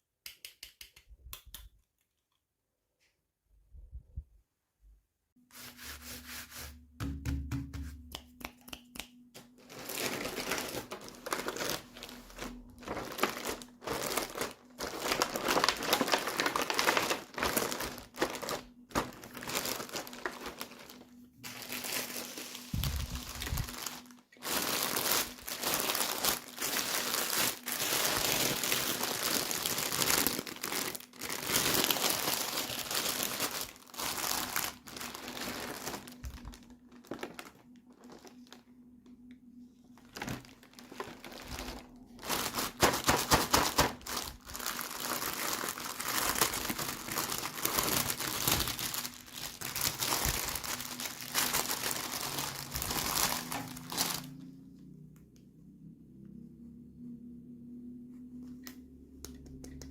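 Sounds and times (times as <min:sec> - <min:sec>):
packaging crinkling and tearing: 0:09.4 - 0:38.6, 0:40.0 - 0:54.5.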